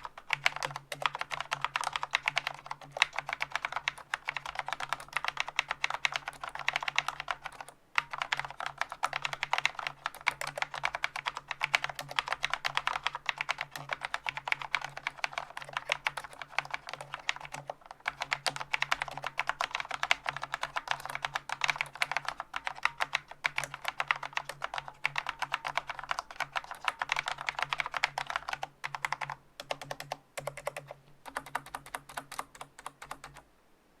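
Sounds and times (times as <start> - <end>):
fast mechanical keyboard typing: 0.0 - 33.4.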